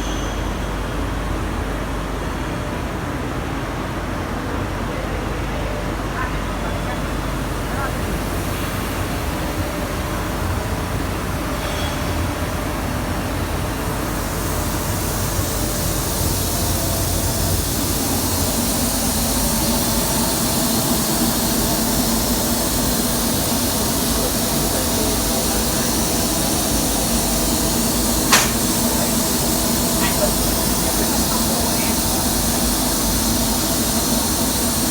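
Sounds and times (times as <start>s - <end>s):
laser cutter mechanical hum: 12.8s - 34.9s
high hiss: 13.0s - 34.9s
sharp click: 28.3s - 28.8s.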